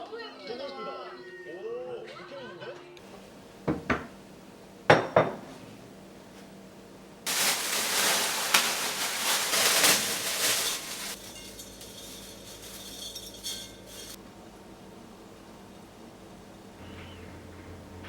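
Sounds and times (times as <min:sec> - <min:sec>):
dishware clinking: 0:04.9 - 0:05.5, 0:07.3 - 0:14.2.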